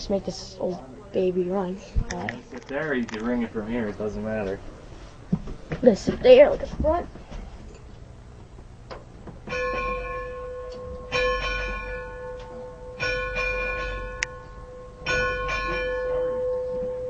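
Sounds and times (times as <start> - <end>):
steam locomotive bell ringing: 9.5 - 17.0.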